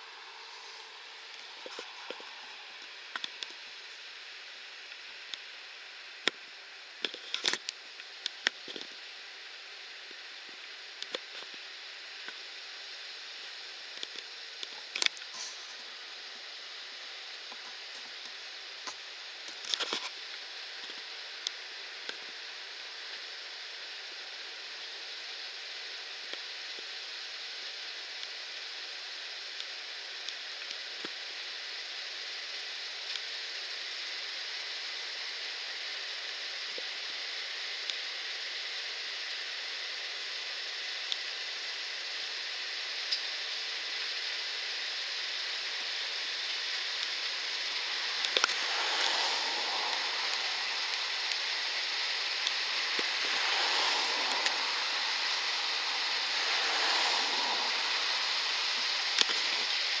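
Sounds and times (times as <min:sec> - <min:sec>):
combine harvester hiss: 0:00.0 - 0:06.2, 0:06.8 - 1:00.0.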